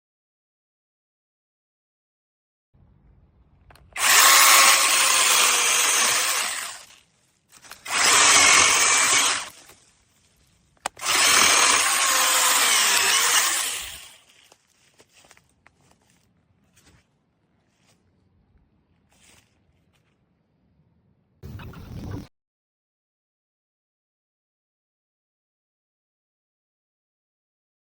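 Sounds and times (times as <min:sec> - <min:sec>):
mini chainsaw running: 0:03.9 - 0:07.0, 0:07.8 - 0:09.6, 0:10.9 - 0:14.3.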